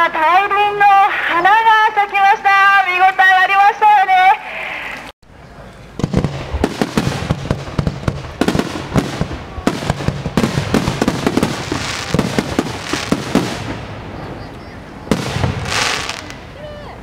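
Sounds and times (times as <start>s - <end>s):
fireworks bursting: 5.9s - 16.7s.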